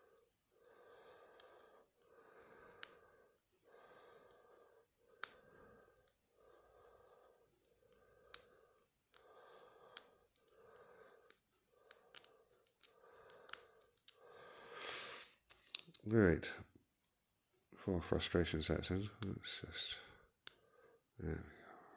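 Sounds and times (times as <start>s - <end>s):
lock pick metallic clicks: 11.9s - 14.2s.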